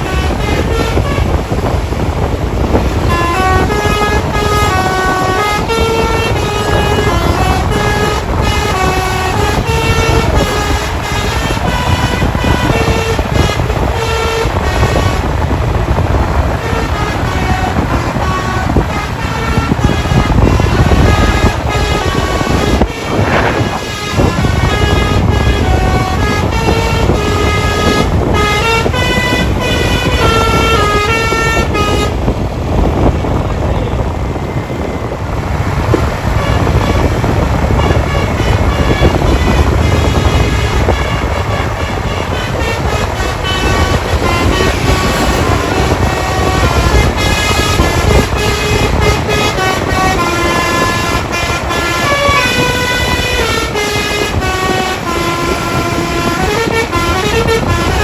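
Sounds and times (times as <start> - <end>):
bus musical horn playing tune: 0.0 - 58.0
steady low rumble: 0.0 - 58.0.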